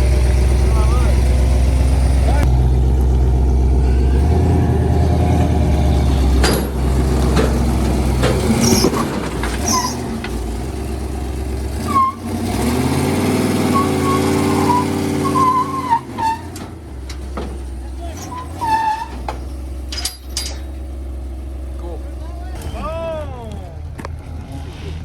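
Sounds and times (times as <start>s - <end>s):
large vehicle engine running: 0.0s - 25.0s
short high-pitched squeals: 13.7s - 16.6s.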